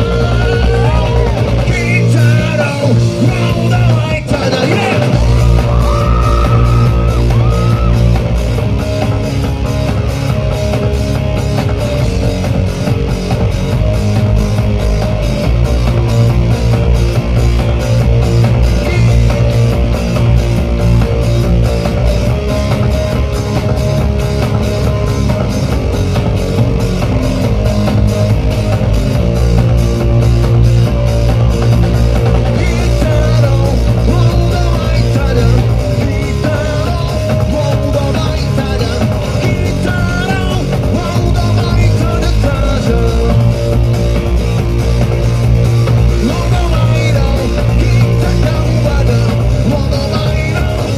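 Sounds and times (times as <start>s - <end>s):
person singing: 0.0s - 8.1s, 32.4s - 43.8s, 46.1s - 50.9s
live rock band playing: 0.0s - 50.9s.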